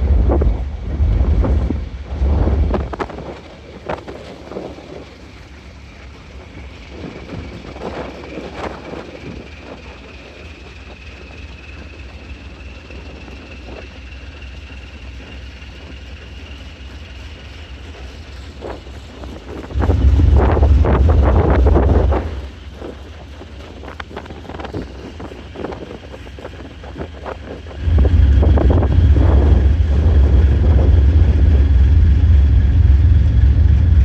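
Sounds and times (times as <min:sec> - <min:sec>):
wind gust on microphone: 0:00.0 - 0:05.2, 0:19.5 - 0:34.0
ferry engine rumble: 0:00.0 - 0:34.0.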